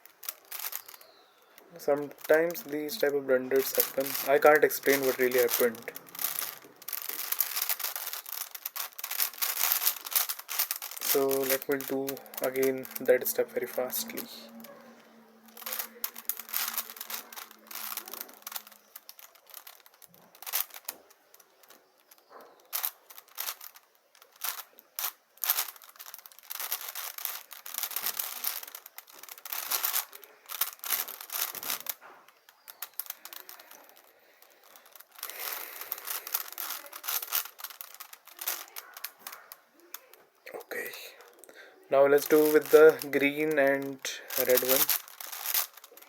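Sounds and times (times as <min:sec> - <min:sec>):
puzzle cube clicking: 0:00.1 - 0:01.2, 0:01.9 - 0:41.5, 0:42.1 - 0:46.0.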